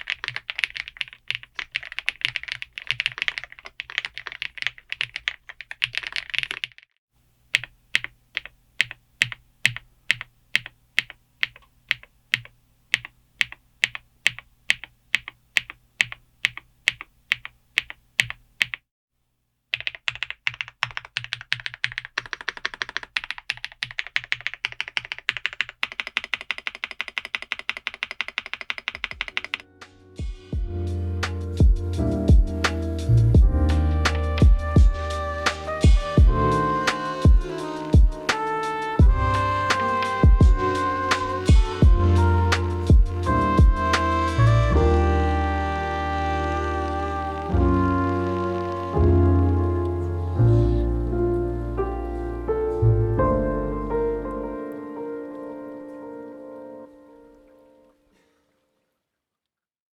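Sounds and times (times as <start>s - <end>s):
mechanical keyboard typing: 0.0s - 6.9s, 7.5s - 18.8s, 19.7s - 29.6s.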